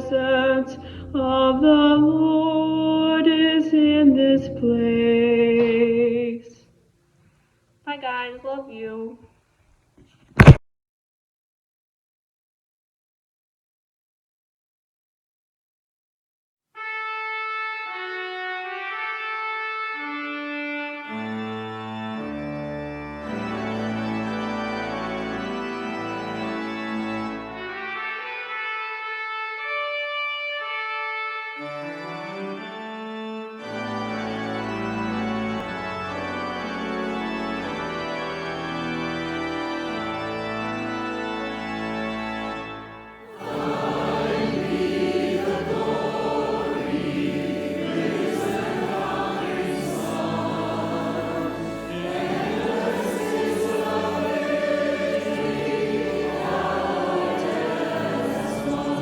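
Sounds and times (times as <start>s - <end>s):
organ playing chords: 0.0s - 5.7s, 16.8s - 59.0s
choir singing: 43.2s - 59.0s.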